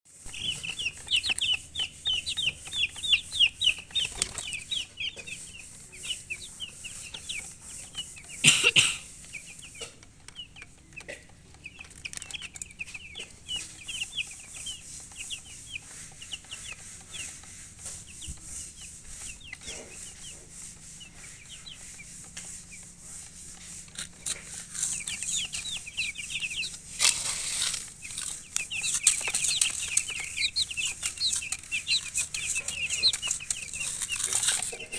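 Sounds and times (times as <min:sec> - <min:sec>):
loud rustling: 0:00.1 - 0:10.4, 0:11.8 - 0:34.9
chicks peeping: 0:00.1 - 0:34.9.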